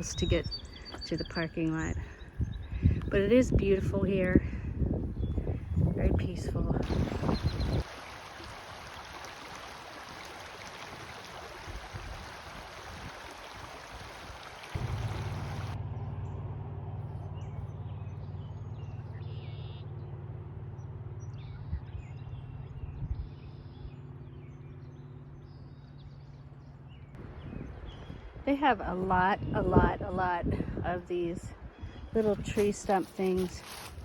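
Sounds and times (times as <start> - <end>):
birds chirping: 0.0 - 12.4, 13.9 - 30.2
creek water rushing: 6.8 - 15.8
low drone: 14.8 - 19.6.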